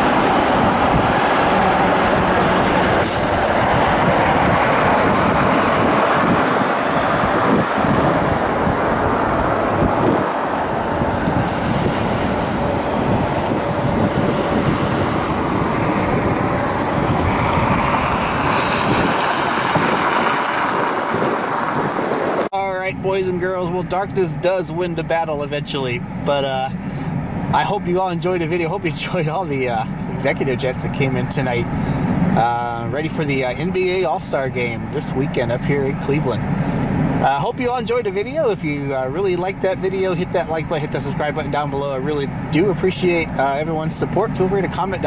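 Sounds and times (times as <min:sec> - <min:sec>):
jet engines roaring: 0:00.0 - 0:22.5
faint engine whine: 0:21.1 - 0:45.0.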